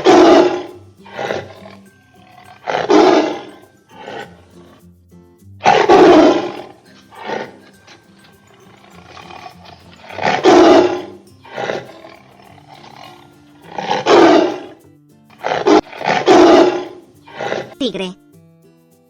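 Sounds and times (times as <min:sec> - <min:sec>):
tiger roaring: 0:00.0 - 0:04.8, 0:05.6 - 0:17.8
background music: 0:00.0 - 0:19.0.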